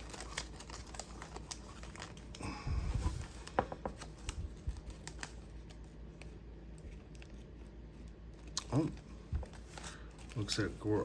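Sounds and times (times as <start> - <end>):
card pack rustling: 0.0 - 6.2, 8.4 - 11.0
cards clicking and tapping: 3.4 - 5.4.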